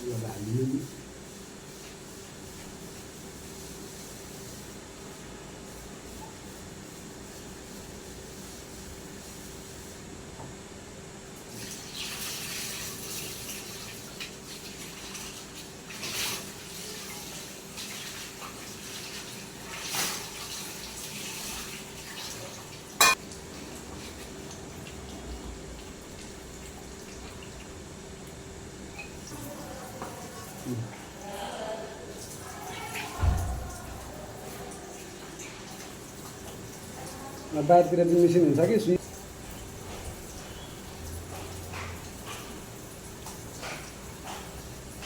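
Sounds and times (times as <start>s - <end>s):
tap water splashing in sink: 33.0s - 37.3s.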